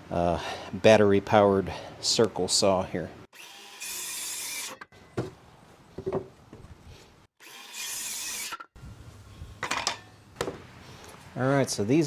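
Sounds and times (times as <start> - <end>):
circular saw cutting wood: 3.3 - 4.9, 7.4 - 8.8.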